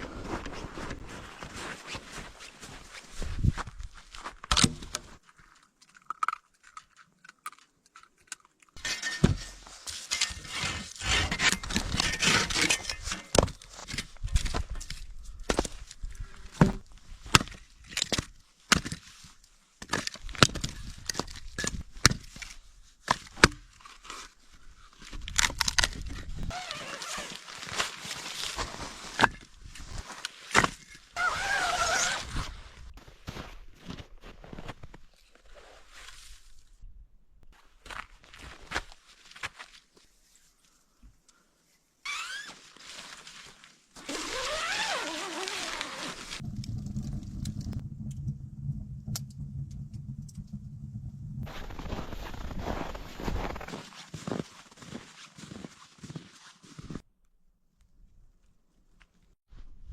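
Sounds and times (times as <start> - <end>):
rustling and crunching: 0.0 - 36.8, 42.2 - 47.8, 51.4 - 57.0.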